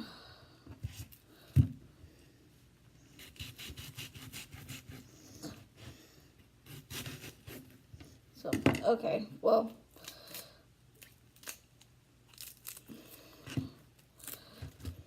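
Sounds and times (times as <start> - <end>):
knife slicing onion: 3.1 - 6.0, 6.6 - 7.8.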